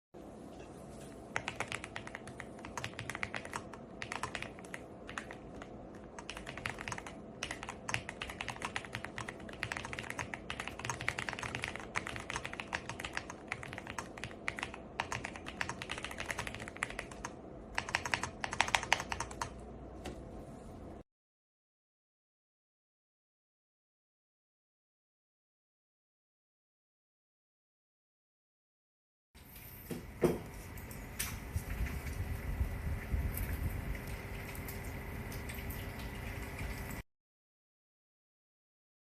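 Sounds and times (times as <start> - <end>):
mechanical keyboard typing: 1.4 - 19.6.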